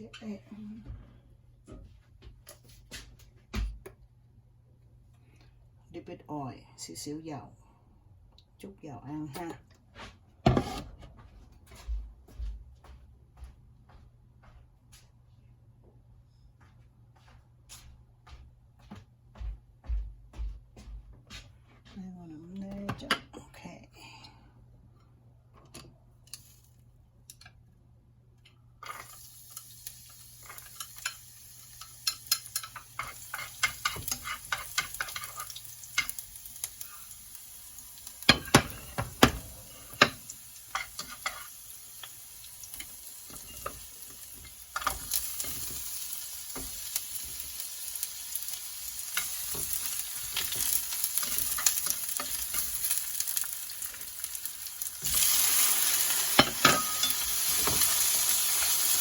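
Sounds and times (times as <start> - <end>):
food sizzling in hot oil: 28.8 - 59.0.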